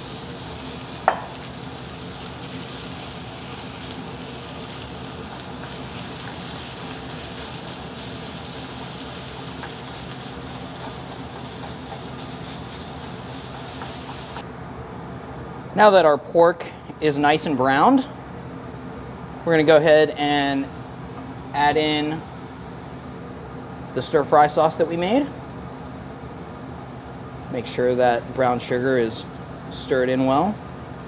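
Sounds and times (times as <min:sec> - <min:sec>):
meat sizzling in oil: 0:00.0 - 0:14.4.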